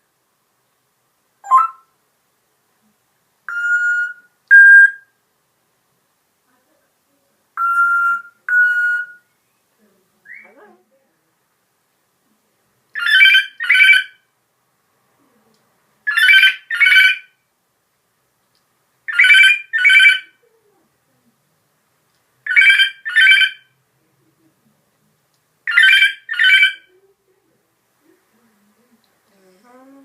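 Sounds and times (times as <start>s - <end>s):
parrot imitating telephone ringing: 1.4s - 1.8s, 3.5s - 5.0s, 7.6s - 9.2s, 13.0s - 14.2s, 16.1s - 17.3s, 19.1s - 20.4s, 22.5s - 23.7s, 25.7s - 26.9s.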